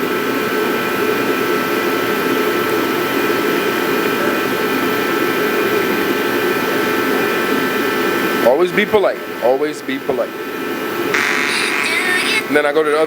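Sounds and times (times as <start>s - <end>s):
motor whirring with high whine: 11.1s - 13.0s.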